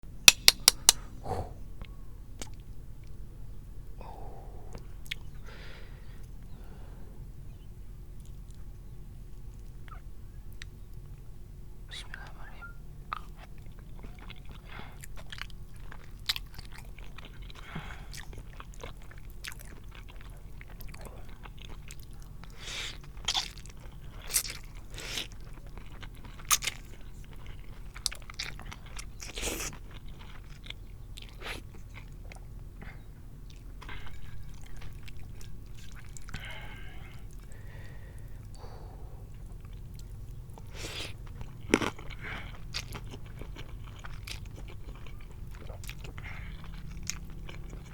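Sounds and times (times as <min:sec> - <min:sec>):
wet chewing and biting: 0:00.3 - 0:01.0, 0:13.1 - 0:47.9
mouth clicks and smacks: 0:00.3 - 0:01.6, 0:02.4 - 0:02.7.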